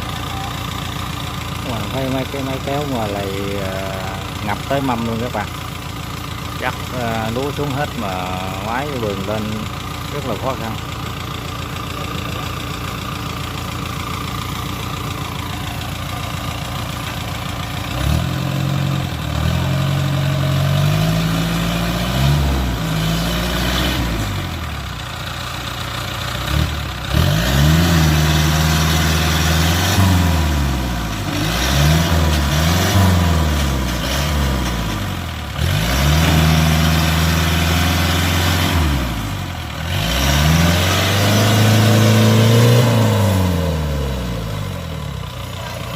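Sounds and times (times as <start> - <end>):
machine engine revving: 35.6 - 44.5.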